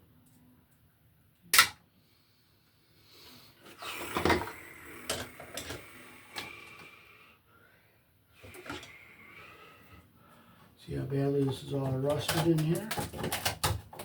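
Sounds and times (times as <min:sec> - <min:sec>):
metal clicks and knocks: 0:11.5 - 0:14.0.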